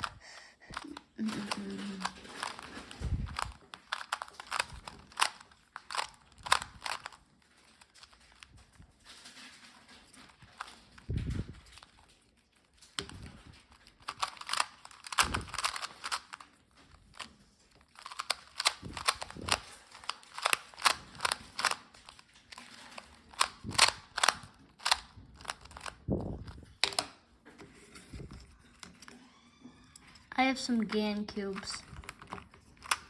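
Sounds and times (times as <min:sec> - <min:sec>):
puzzle cube clicking as turned: 0:00.0 - 0:08.5, 0:12.9 - 0:27.2, 0:30.9 - 0:33.0.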